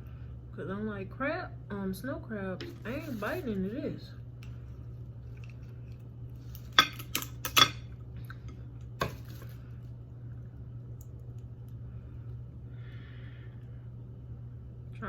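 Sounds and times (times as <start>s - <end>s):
scissors cracking crab shell: 6.5s - 8.4s.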